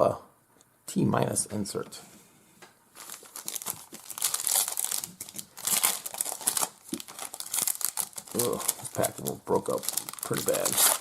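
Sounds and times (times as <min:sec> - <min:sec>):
wrapper crinkling and tearing: 0:03.0 - 0:11.0.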